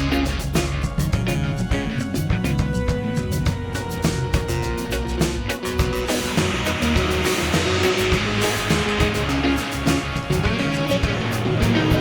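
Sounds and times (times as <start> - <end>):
rock music: 0.0 - 12.0.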